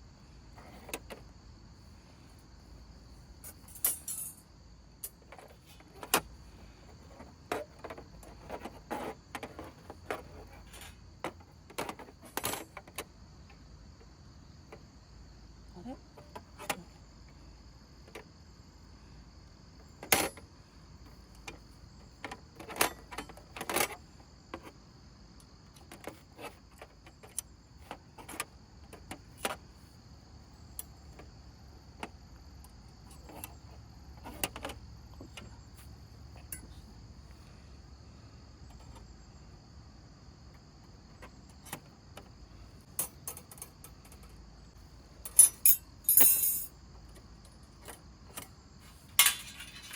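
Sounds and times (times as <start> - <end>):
crickets trilling: 0.0 - 49.9
camp gear clicks and knocks: 0.5 - 1.3, 3.4 - 14.0, 19.8 - 24.8, 25.4 - 30.0, 30.6 - 37.0, 40.5 - 49.9.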